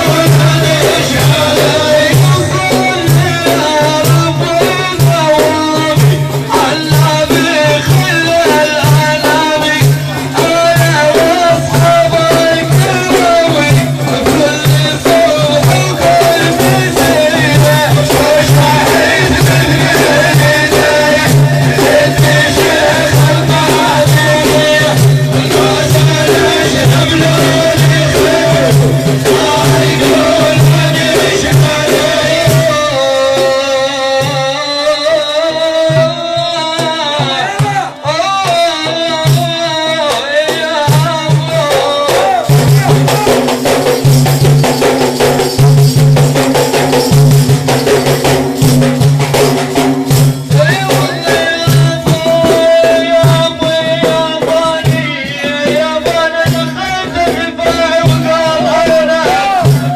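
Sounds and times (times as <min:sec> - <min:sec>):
person singing religious chant: 0:00.0 - 0:43.8, 0:50.4 - 0:59.9
frame drums with jingles: 0:00.0 - 0:59.9.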